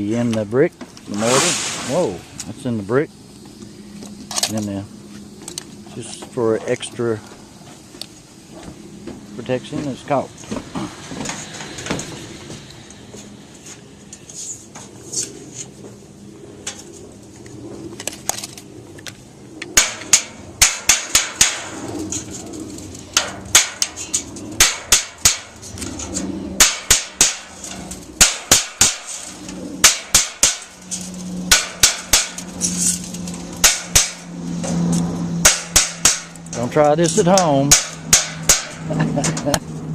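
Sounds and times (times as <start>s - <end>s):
hammer blows: 31.5s - 32.5s, 33.6s - 36.6s.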